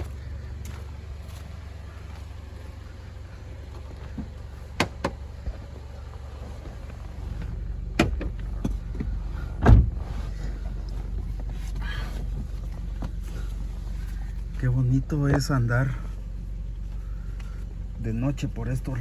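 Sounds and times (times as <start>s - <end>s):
steady low rumble: 0.0s - 19.0s
heavy thump: 8.0s - 10.1s.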